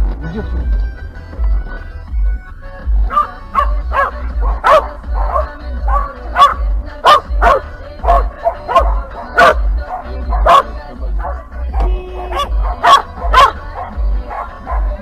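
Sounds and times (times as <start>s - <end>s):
background music with bass beat: 0.0s - 15.0s
dog barking: 3.1s - 15.0s.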